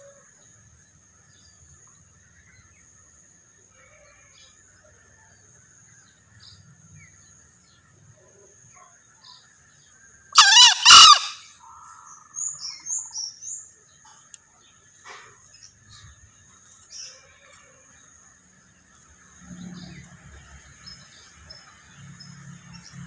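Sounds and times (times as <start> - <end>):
junglefowl crowing: 10.4 - 12.4.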